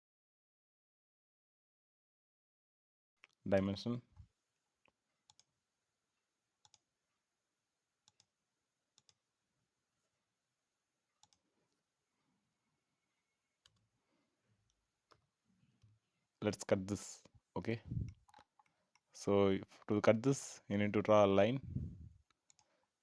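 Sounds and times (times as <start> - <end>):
computer mouse clicks: 4.8 - 5.5, 6.6 - 6.8, 8.0 - 8.3, 11.2 - 11.4, 22.2 - 22.7.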